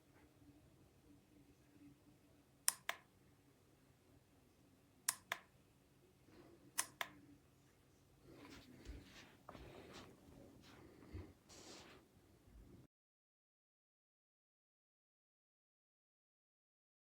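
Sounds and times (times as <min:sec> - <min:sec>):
low steady background noise: 0:00.0 - 0:12.9.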